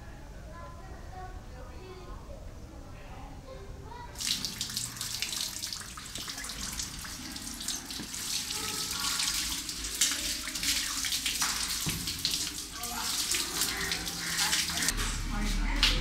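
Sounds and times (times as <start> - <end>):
tap water running: 4.2 - 14.9.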